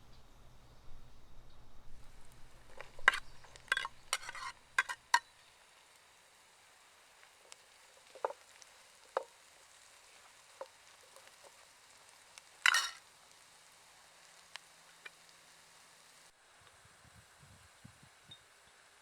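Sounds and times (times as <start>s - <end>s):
utensil scraping pan: 1.9s - 5.3s, 12.6s - 13.0s
food sizzling in a pan: 1.9s - 19.0s
utensil clicking against pan: 2.2s - 5.3s, 12.6s - 13.0s.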